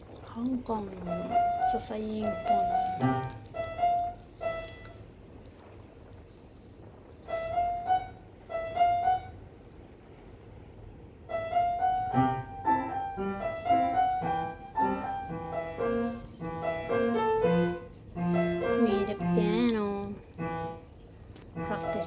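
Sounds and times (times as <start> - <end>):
piano playing: 0.7 - 5.1, 7.2 - 9.6, 11.2 - 22.0.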